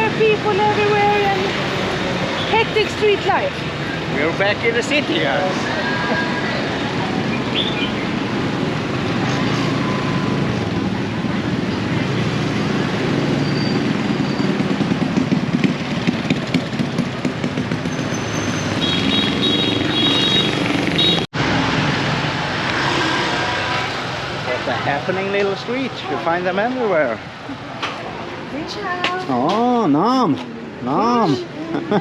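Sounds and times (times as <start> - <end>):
motorbikes and cars passing: 0.0 - 32.0.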